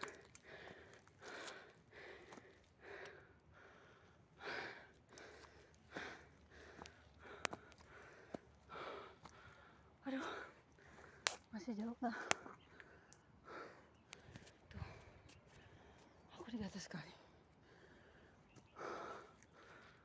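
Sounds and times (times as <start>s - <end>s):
person breathing hard: 0.0s - 11.3s, 17.6s - 20.0s.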